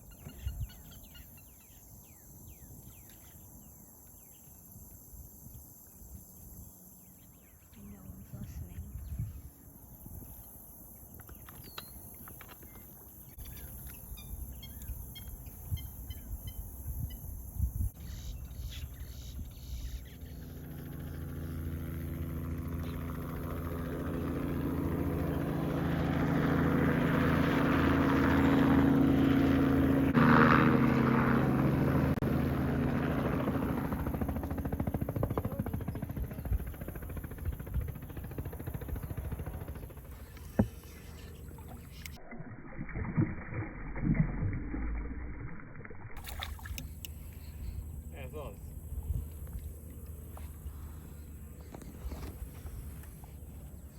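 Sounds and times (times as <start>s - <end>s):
small birds chirping: 6.9s - 21.2s
boat engine passing by: 18.0s - 36.6s, 38.1s - 53.9s.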